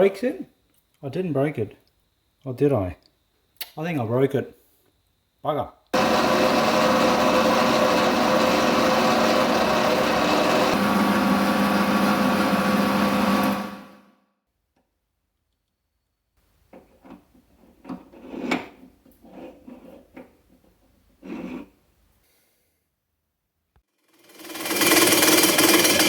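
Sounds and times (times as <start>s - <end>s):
power tool motor running: 6.0s - 14.1s, 24.1s - 26.0s.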